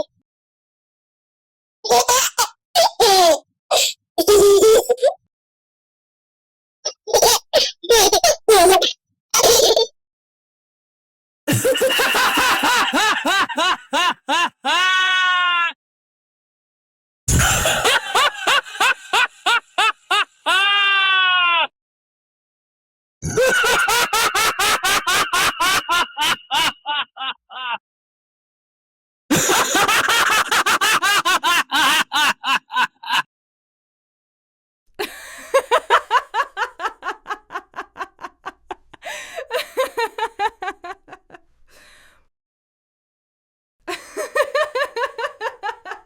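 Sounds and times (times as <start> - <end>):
person laughing: 11.5 - 14.8, 17.3 - 21.7, 23.2 - 27.8, 29.3 - 33.3, 35.0 - 41.4, 43.9 - 46.0.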